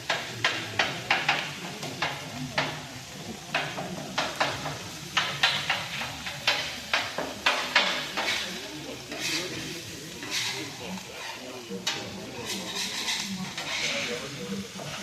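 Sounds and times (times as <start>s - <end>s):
food frying in a pan: 0.0s - 15.0s
utensil scraping a pan: 3.5s - 15.0s.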